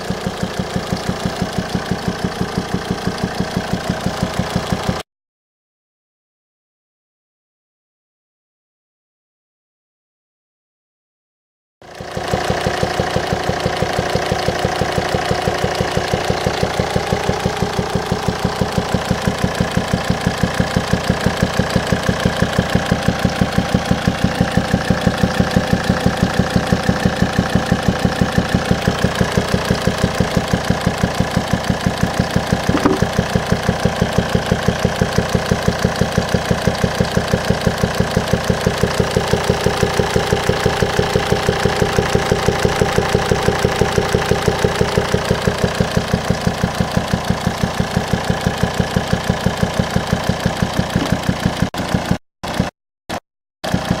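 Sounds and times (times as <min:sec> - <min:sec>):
diesel engine idling: 0:00.0 - 0:05.0, 0:11.9 - 0:52.0
fast popping from air intake: 0:32.7 - 0:33.2
brief click: 0:32.8 - 0:33.1.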